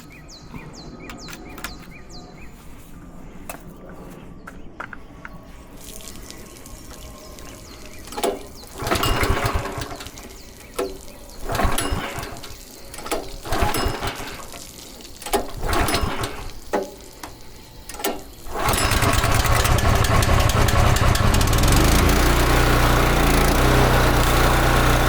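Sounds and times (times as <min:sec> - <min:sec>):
pressure washer engine running: 0:06.9 - 0:17.2, 0:17.9 - 0:25.0.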